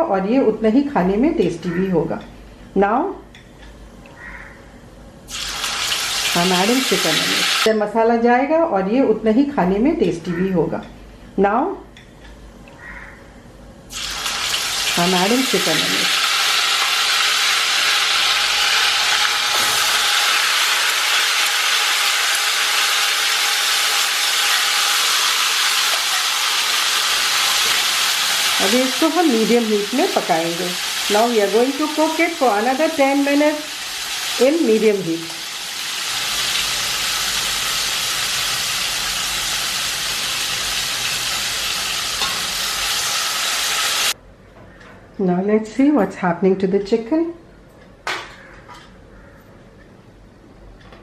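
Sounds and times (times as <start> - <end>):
chicken sizzling in hot oil: 5.3 - 7.7, 13.9 - 44.2.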